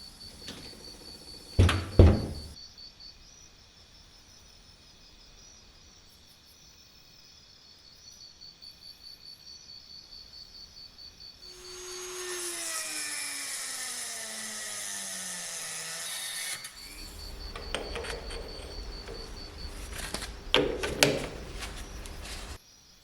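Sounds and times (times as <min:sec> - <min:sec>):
handling noise: 0:00.0 - 0:02.6, 0:16.8 - 0:22.6
sharp knocks: 0:01.5 - 0:02.6, 0:16.8 - 0:22.6
power tool motor spinning down: 0:11.5 - 0:22.6.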